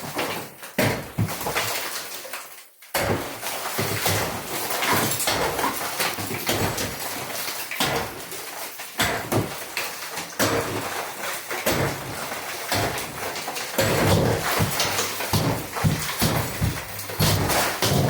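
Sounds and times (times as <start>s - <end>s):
pickaxe striking concrete: 3.0s - 7.0s, 9.0s - 9.6s, 10.4s - 11.0s, 11.6s - 18.0s
broken concrete rattling: 12.2s - 18.0s.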